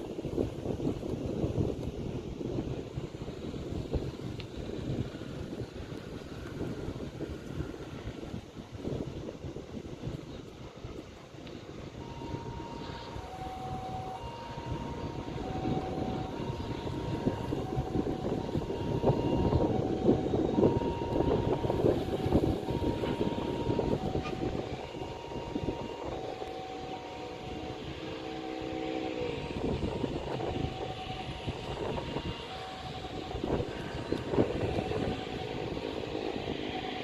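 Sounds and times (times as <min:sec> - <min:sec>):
jet engine roaring: 0:11.9 - 0:37.0
two-note electronic tone: 0:12.0 - 0:37.0.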